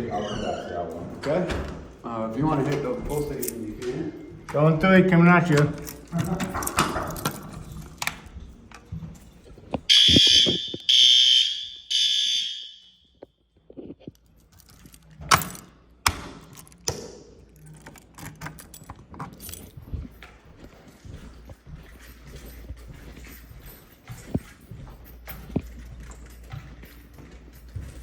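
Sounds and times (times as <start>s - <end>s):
shrill fire alarm blasts: 9.9s - 13.3s.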